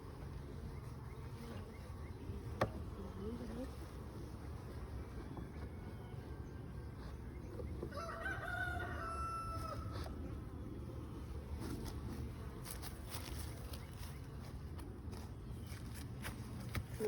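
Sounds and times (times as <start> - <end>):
honeybees humming: 0.0 - 17.0
rooster crowing: 7.9 - 10.0.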